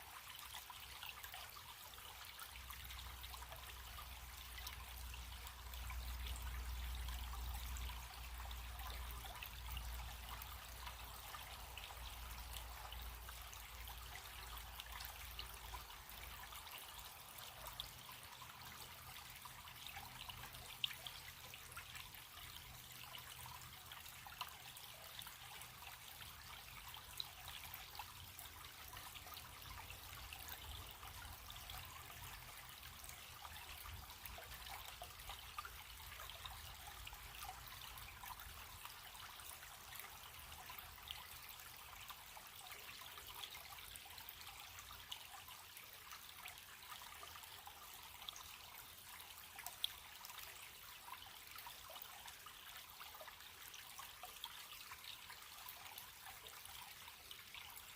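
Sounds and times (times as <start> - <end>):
light drips and splashes: 0.0 - 57.9
small stream trickling: 0.0 - 57.9.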